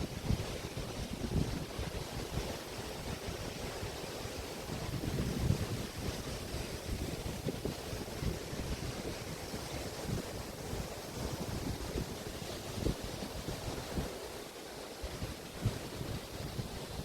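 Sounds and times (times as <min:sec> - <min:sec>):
wind buffeting microphone: 0:00.0 - 0:14.4, 0:15.0 - 0:17.0
waves washing onto beach: 0:00.0 - 0:17.0.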